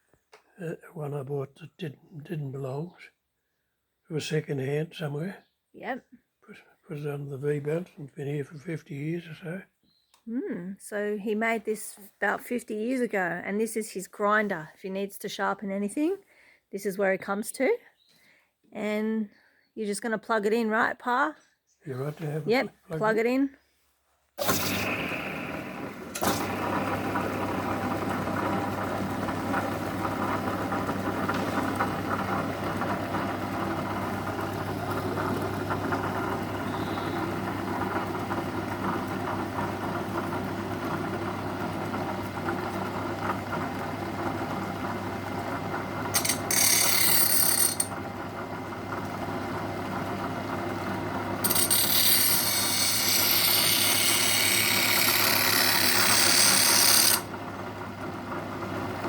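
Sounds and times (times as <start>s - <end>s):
steel grinding on wheel: 24.4s - 38.2s, 46.1s - 48.0s, 51.4s - 57.3s
electric motor humming: 24.4s - 59.0s.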